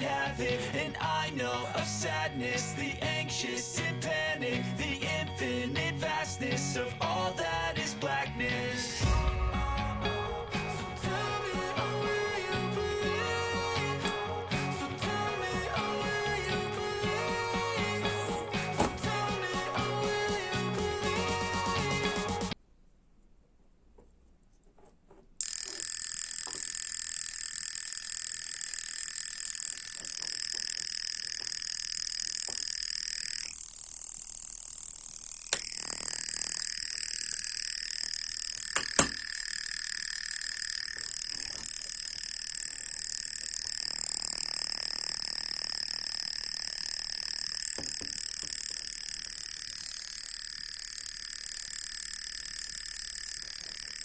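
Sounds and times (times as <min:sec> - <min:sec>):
toy motor rattling buzz: 0:25.4 - 0:54.0
sharp click: 0:35.3 - 0:39.4.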